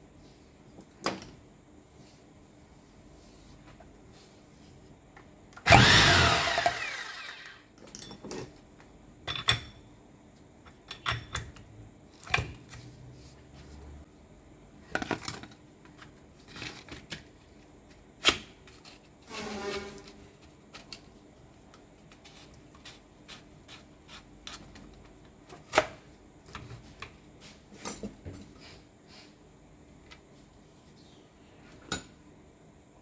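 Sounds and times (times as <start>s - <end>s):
power tool running and winding down: 5.7s - 7.6s
tools and metal parts clinking: 7.8s - 8.6s, 9.2s - 9.8s.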